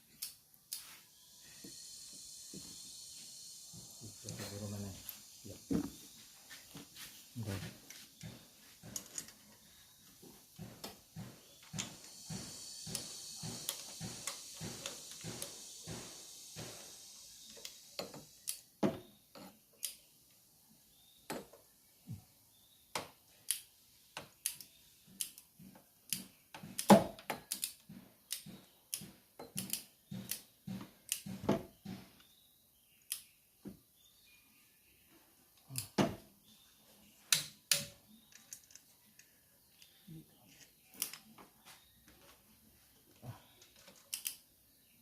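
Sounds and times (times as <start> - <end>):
hiss: 0.8 - 7.6, 10.3 - 18.8
tools clicking and clinking on metal: 7.9 - 9.5.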